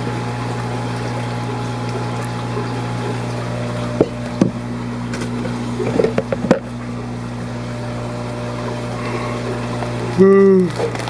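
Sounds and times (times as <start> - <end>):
pumps humming: 0.0 - 11.0
handling knocks and clicks: 4.0 - 6.7.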